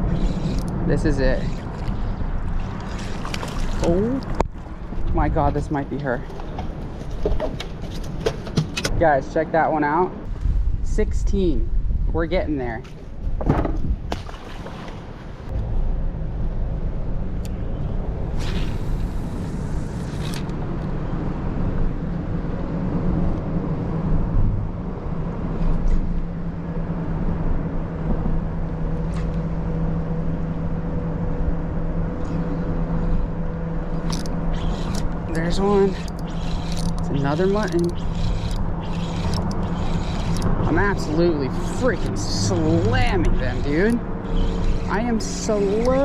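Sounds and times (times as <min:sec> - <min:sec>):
brief hissing bursts: 0:18.4 - 0:20.2
boat engine droning: 0:27.8 - 0:46.0.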